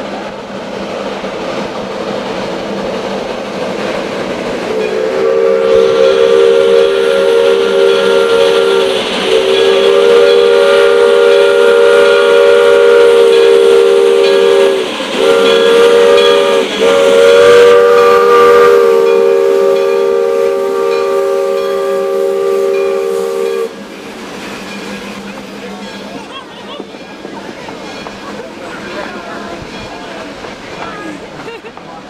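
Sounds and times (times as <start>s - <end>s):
steam locomotive chime whistle: 4.7s - 23.9s.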